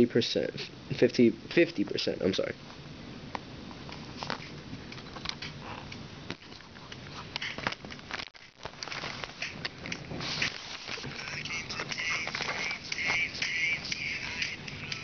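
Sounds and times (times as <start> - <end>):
tinny pop song through headphones: 9.4 - 15.0.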